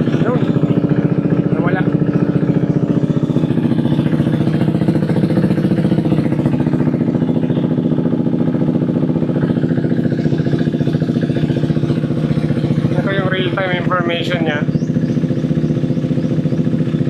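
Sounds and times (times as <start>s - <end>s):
motorcycle engine idling: 0.0s - 17.0s.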